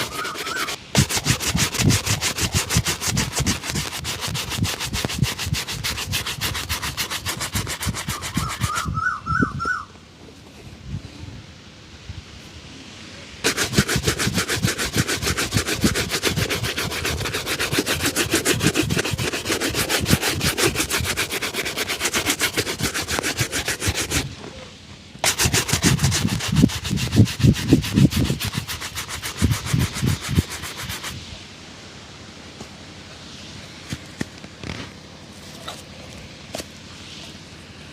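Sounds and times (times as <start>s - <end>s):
shoe being buffed: 0.0s - 9.0s, 13.4s - 24.3s, 25.2s - 31.2s.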